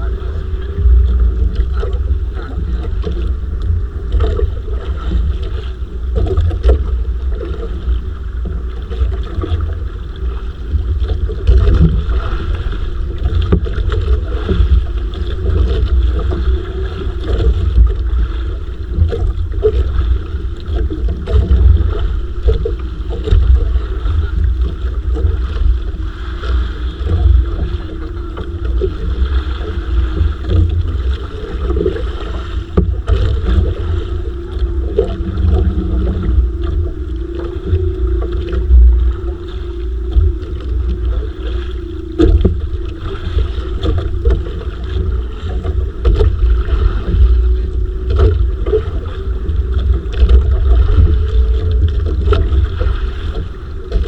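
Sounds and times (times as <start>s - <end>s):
boat noise at sea: 0.0s - 54.0s
wind buffeting microphone: 0.0s - 54.0s.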